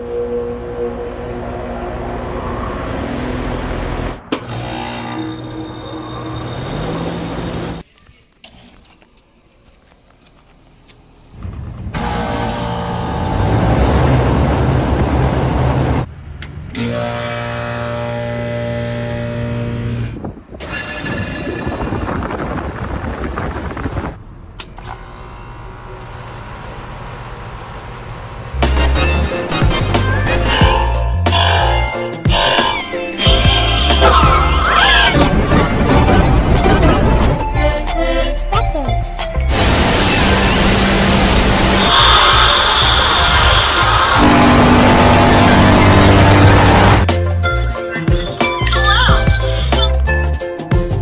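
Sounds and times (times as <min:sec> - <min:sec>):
hvac mechanical hum: 0:07.8 - 0:13.8
hvac motor hum and whir: 0:24.6 - 0:28.6
music: 0:28.6 - 0:51.0.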